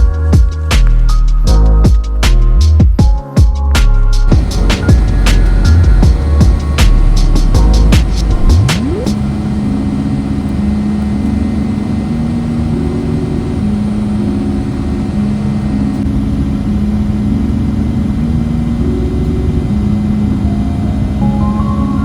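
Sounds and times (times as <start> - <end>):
steady low hum: 4.2 - 22.0
slow melody of low notes: 4.3 - 22.0.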